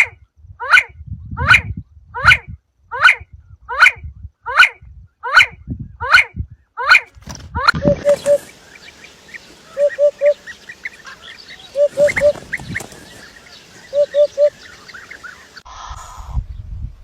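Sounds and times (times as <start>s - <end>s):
high bird chirps: 7.8s - 15.6s.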